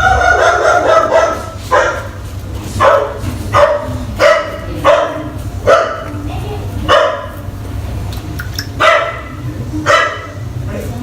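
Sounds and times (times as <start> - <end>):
dog barking: 0.0 - 2.2, 2.8 - 6.2, 6.9 - 7.4, 8.8 - 10.4.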